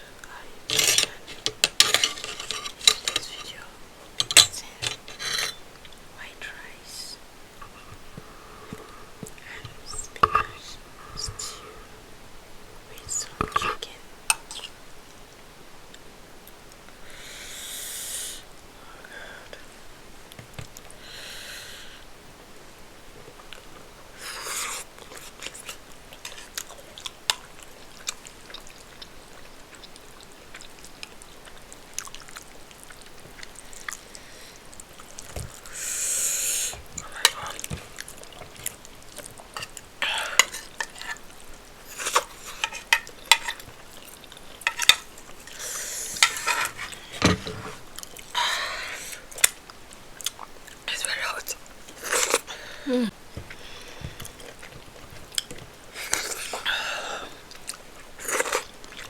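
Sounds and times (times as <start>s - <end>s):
utensil scraping a dish: 0.7s - 3.5s, 4.2s - 5.6s, 45.6s - 47.8s
short breathy hisses: 35.7s - 36.8s.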